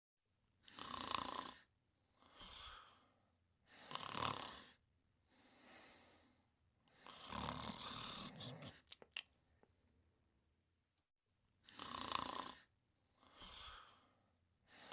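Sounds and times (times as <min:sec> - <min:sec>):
cartoon characters snoring: 0:00.6 - 0:03.0, 0:03.7 - 0:04.8, 0:06.9 - 0:08.9, 0:11.6 - 0:14.0.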